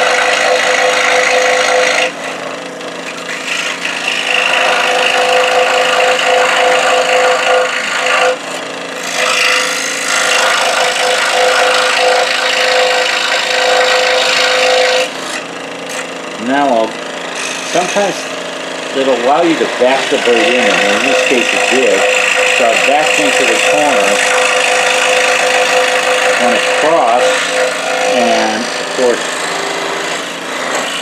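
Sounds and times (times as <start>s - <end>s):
scroll saw cutting wood: 0.0s - 31.0s.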